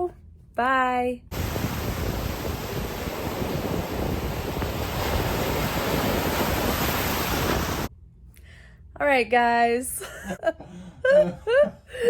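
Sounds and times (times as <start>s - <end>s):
ocean surf breaking on beach: 1.3s - 7.9s
wind buffeting microphone: 1.3s - 7.9s.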